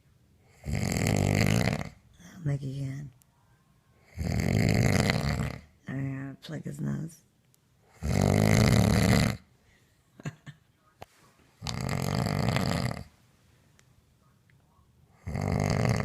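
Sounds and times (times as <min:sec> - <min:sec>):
man snoring: 0:00.5 - 0:02.0, 0:04.1 - 0:05.7, 0:07.9 - 0:09.5, 0:11.6 - 0:13.1, 0:15.2 - 0:16.0.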